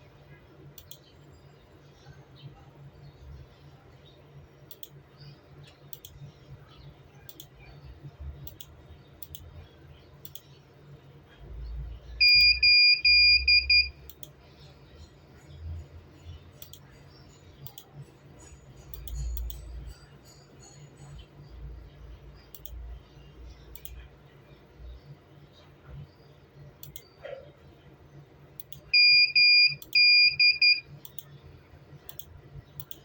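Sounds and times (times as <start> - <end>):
computer mouse clicking: 0.8 - 1.1, 4.7 - 5.0, 5.6 - 6.3, 7.2 - 7.6, 8.4 - 9.5, 10.2 - 10.6, 14.1 - 14.4, 16.6 - 16.9, 17.6 - 17.9, 18.9 - 19.6, 22.5 - 22.8, 23.7 - 24.0, 26.8 - 27.2, 28.6 - 28.8, 31.0 - 31.4, 32.1 - 33.0.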